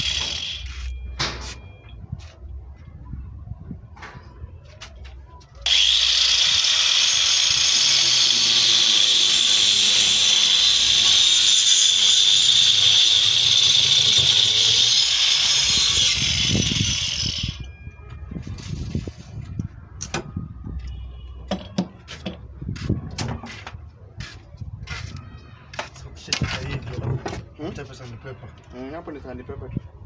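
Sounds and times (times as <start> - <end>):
power tool cutting wood: 0.0 - 0.9, 5.7 - 17.6.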